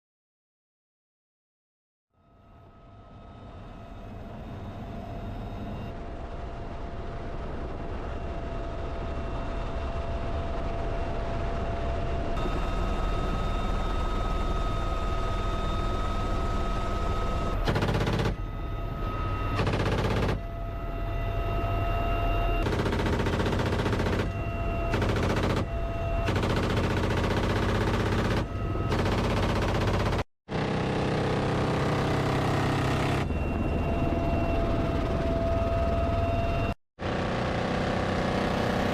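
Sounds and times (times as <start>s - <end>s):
helicopter turbine and rotor whine: 2.2s - 38.9s
minigun fire bursts: 17.6s - 18.6s, 19.5s - 20.5s, 22.6s - 33.2s.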